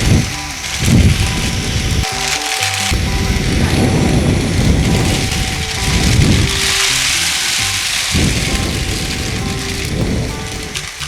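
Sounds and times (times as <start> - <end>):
background music with a beat: 0.0 - 11.0
loud hissing rush: 0.0 - 11.0.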